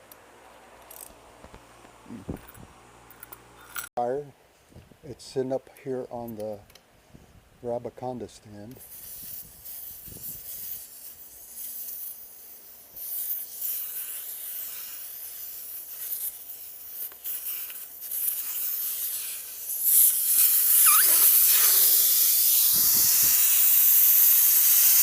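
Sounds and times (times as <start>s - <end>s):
air hissing out of a tire: 8.8s - 25.0s.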